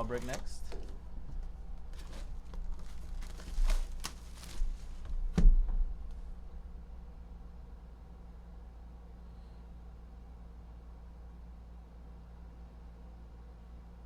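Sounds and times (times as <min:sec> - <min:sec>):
handling rustles and knocks: 0:00.0 - 0:06.4
thump: 0:05.3 - 0:06.0.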